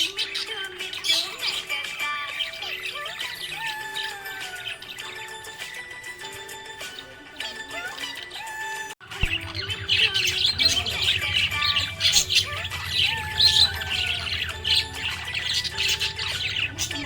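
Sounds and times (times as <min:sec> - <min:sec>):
budgerigar chirping and squawking: 0:00.0 - 0:05.8, 0:06.8 - 0:17.0.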